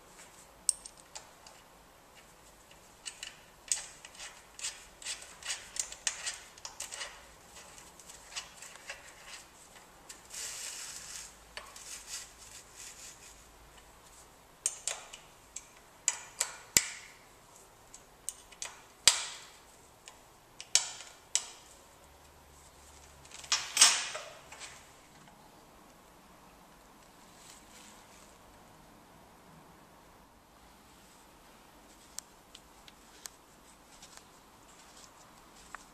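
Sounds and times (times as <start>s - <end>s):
metal tools clicking and clinking: 0.7s - 1.6s.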